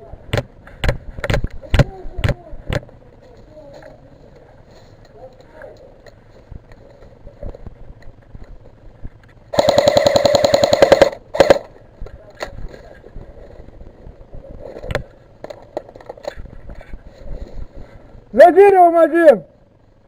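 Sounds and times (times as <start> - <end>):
airsoft rifle full-auto bursts: 9.5 - 11.7.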